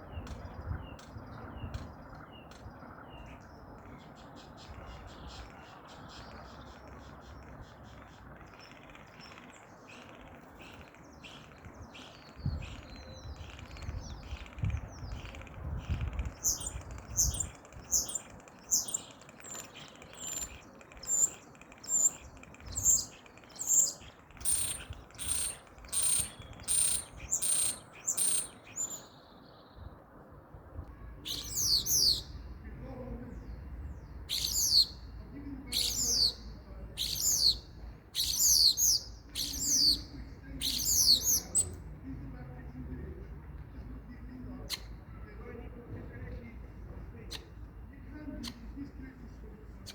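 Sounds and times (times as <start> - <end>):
starling calling: 3.2 - 29.2, 31.2 - 32.4, 34.3 - 35.0, 35.7 - 41.8.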